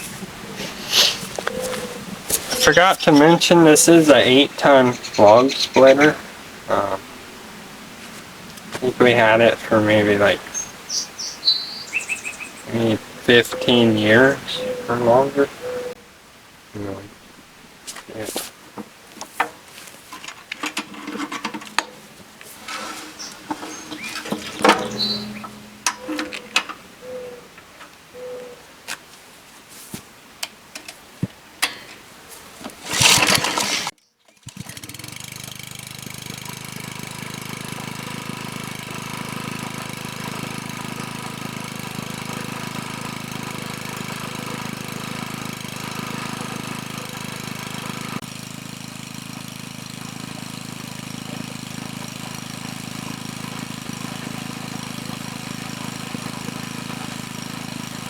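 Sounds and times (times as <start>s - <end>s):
loud rasp: 0.0s - 3.2s, 22.5s - 26.2s
small engine running: 0.0s - 16.0s, 20.6s - 27.1s, 32.8s - 58.0s.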